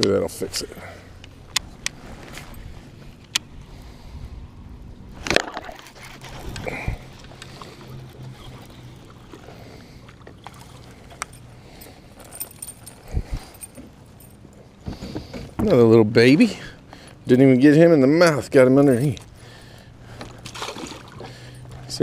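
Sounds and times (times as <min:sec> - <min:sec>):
water sloshing around hull: 0:05.1 - 0:15.6, 0:19.0 - 0:21.9.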